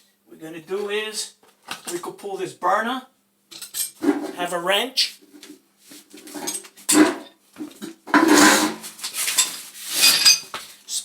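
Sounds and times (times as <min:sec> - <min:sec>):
metal hand tools clattering: 0:06.2 - 0:10.5.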